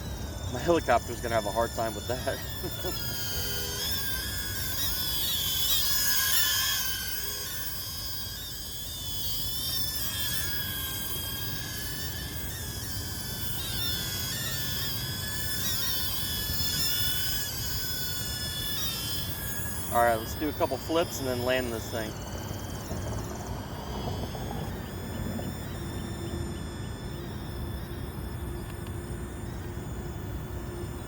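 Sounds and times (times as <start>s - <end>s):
drone propeller motors whining: 0.0s - 31.0s
wind rumble on microphone: 21.8s - 31.0s.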